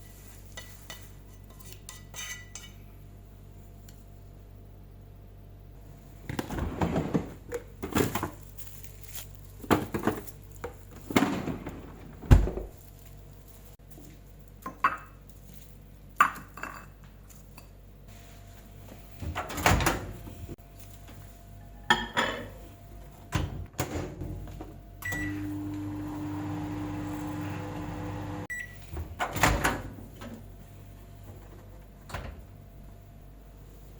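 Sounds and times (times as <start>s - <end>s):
dishes clattering on counter: 21.9s - 22.6s
microwave humming: 22.8s - 31.0s
microwave beep: 25.0s - 28.9s.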